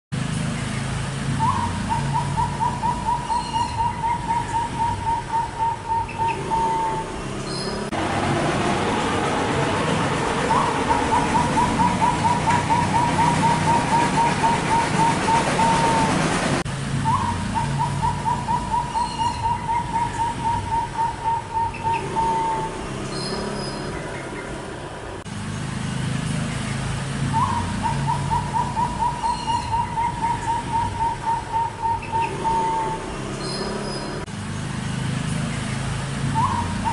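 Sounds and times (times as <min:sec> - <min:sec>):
bird trilling: 0:01.4 - 0:07.9, 0:10.4 - 0:16.1, 0:17.0 - 0:24.6, 0:27.3 - 0:34.2, 0:36.4 - 0:36.9.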